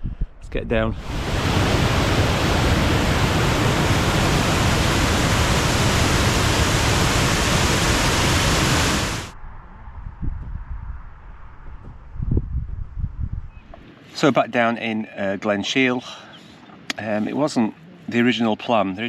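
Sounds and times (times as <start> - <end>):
rushing water: 1.0 - 9.4.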